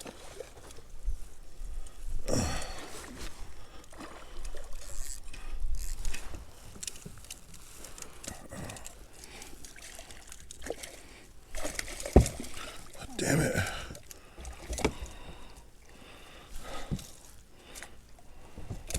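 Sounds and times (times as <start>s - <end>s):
water sloshing: 2.6s - 18.9s
knocks around a kayak: 11.8s - 12.6s.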